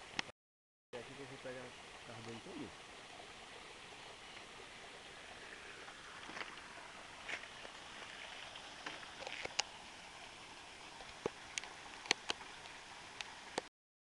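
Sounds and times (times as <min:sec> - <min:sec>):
outdoor hiss: 0:01.0 - 0:13.7.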